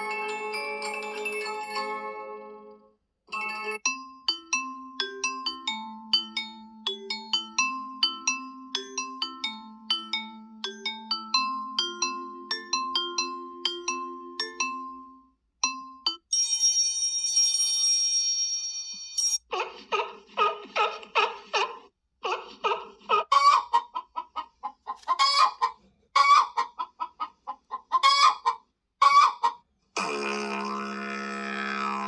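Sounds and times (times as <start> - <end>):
bell-like chime: 0.0 - 4.0, 16.3 - 19.4
chicken cluck ringtone: 19.5 - 29.7.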